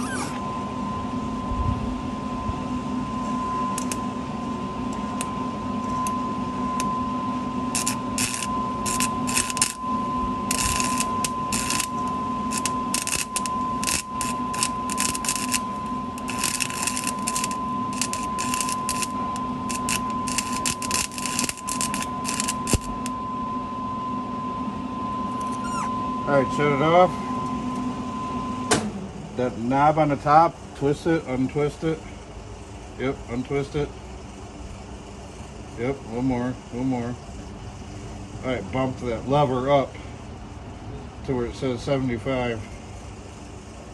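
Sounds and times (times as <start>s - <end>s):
welding machine hum: 0.0s - 43.9s
welding arc crackling: 7.6s - 23.2s.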